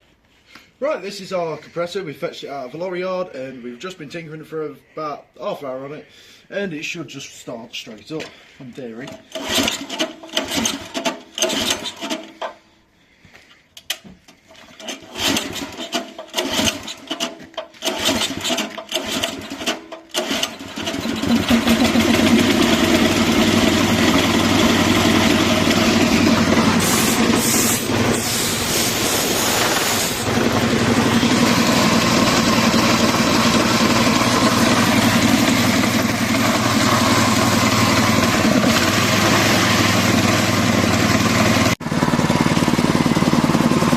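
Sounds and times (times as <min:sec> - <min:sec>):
small petrol engine starting: 0:09.0 - 0:12.8, 0:13.8 - 0:43.9.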